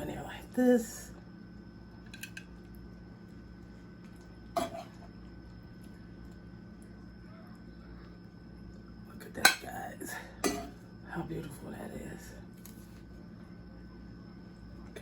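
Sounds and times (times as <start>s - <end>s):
steady electrical hum: 0.0s - 15.0s.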